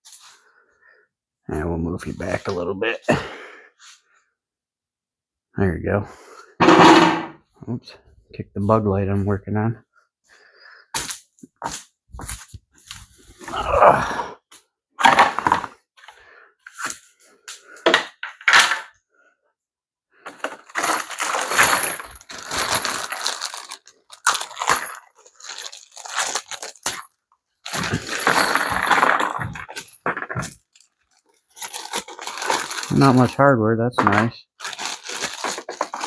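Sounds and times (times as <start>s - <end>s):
packaging rustling: 20.3s - 33.4s, 34.6s - 36.0s
plastic parts knocking and clicking: 34.0s - 36.0s.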